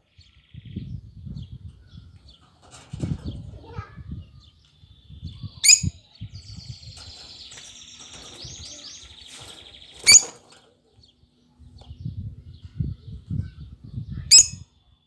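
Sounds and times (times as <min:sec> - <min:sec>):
bird shrill chirps: 0:05.3 - 0:10.4, 0:14.3 - 0:14.7.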